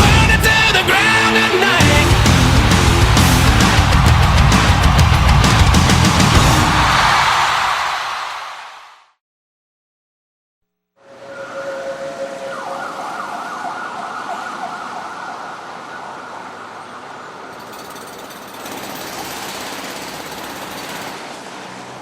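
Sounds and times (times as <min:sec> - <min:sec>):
bright wash of noise: 0:11.0 - 0:16.9
siren-like warbling tone: 0:11.0 - 0:17.0.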